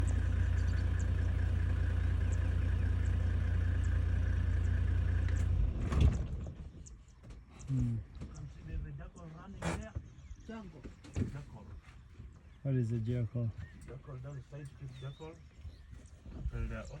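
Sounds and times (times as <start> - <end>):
vehicle engine idling: 0.0 - 17.0.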